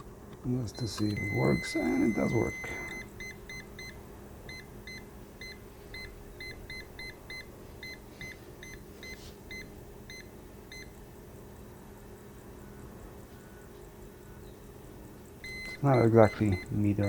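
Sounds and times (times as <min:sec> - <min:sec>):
steady low hum: 0:00.0 - 0:17.0
warning buzzer short high beeps: 0:01.1 - 0:03.9, 0:15.5 - 0:17.0.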